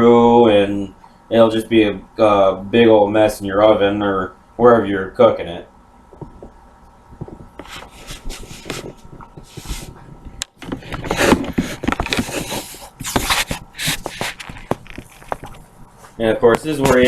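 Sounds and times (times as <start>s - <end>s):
hands rubbing and scraping dough: 7.2s - 17.0s.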